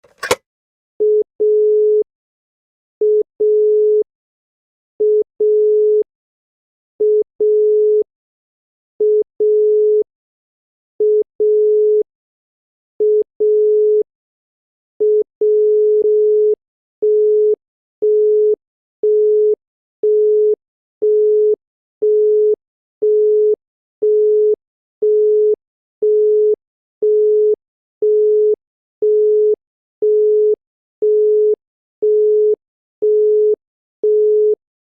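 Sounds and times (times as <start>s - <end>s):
telephone dial tone beeps: 0.0s - 0.4s, 1.0s - 2.1s, 3.0s - 4.1s, 5.0s - 6.1s, 7.0s - 8.1s, 9.0s - 10.1s, 11.0s - 12.1s, 13.0s - 14.1s, 15.0s - 34.6s
telephone busy tone beeps: 1.0s - 2.0s, 3.0s - 4.0s, 5.0s - 6.0s, 7.0s - 8.0s, 9.0s - 10.0s, 11.0s - 12.0s, 13.0s - 14.0s, 15.0s - 34.6s.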